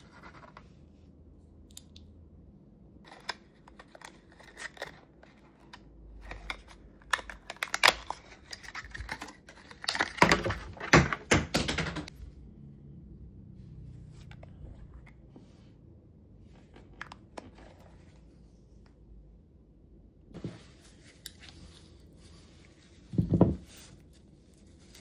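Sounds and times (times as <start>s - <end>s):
packaging clicks and crinkling: 3.1s - 11.3s.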